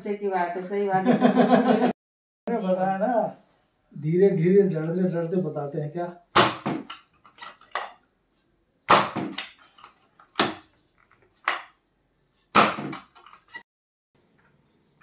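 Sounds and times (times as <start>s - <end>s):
sharp cracks: 8.9s - 9.7s, 12.5s - 13.5s.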